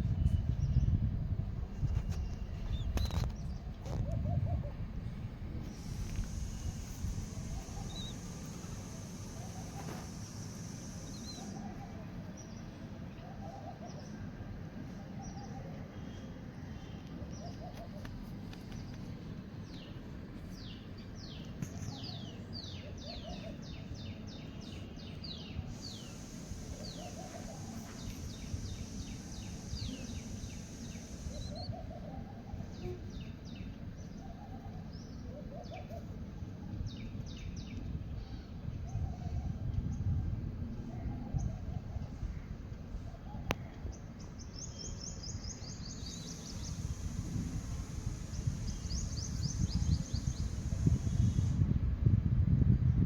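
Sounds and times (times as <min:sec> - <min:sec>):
steady low rumble: 0:00.0 - 0:13.2
soft lower bird calls: 0:05.7 - 0:19.1, 0:19.7 - 0:39.6, 0:40.7 - 0:51.6
birds chirping: 0:05.7 - 0:36.2, 0:43.2 - 0:51.6.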